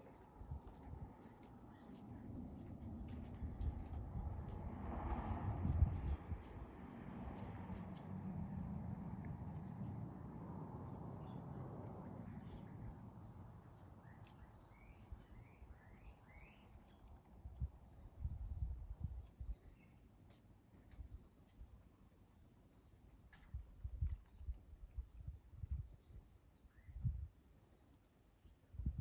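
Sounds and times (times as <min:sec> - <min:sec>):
low steady outdoor noise: 0:00.0 - 0:29.0
small bird chirping: 0:07.3 - 0:10.3, 0:10.9 - 0:22.1, 0:25.7 - 0:27.3.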